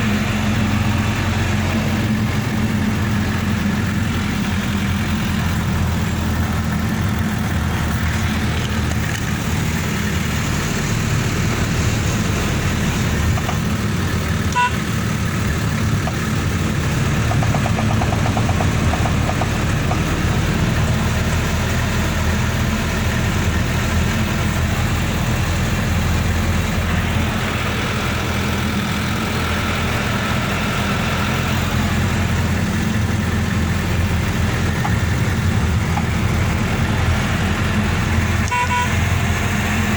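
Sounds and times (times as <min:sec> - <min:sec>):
vehicle engine rumbling: 0:00.0 - 0:39.9
short pitched beep: 0:14.6 - 0:14.8.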